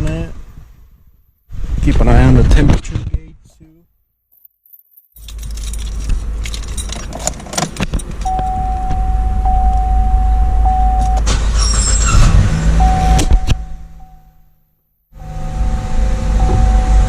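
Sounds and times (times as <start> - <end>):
car keys jangling and clicking: 4.3 - 10.0
car engine starting and idling: 5.2 - 14.5, 15.2 - 17.0
steady electronic tone: 8.3 - 11.3, 12.8 - 14.5, 15.2 - 17.0.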